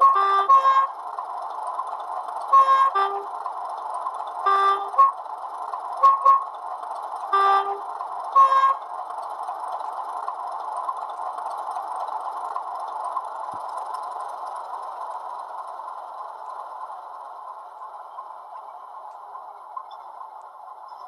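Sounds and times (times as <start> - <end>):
two-tone horn toots: 0.0 - 1.0, 2.4 - 3.4, 4.4 - 5.2, 6.0 - 6.6, 7.3 - 8.9
diesel engine running: 0.0 - 21.0.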